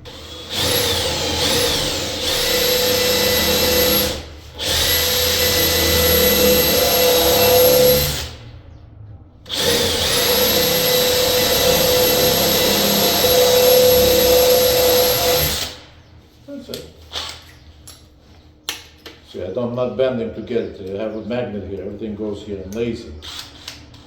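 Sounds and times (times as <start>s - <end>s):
power drill boring wood: 0.0s - 8.4s, 9.5s - 15.9s.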